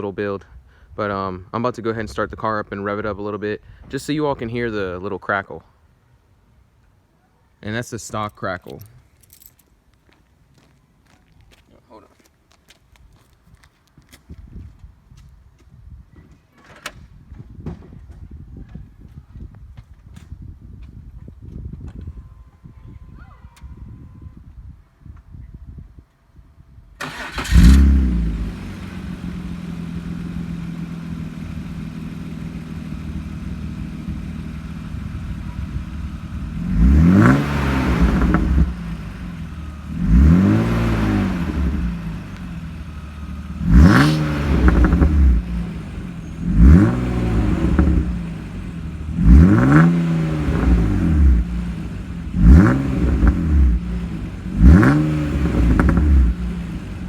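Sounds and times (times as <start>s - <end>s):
car engine starting and idling: 27.0s - 57.0s
engine revving: 27.0s - 57.0s
exhaust crackle: 27.0s - 57.0s.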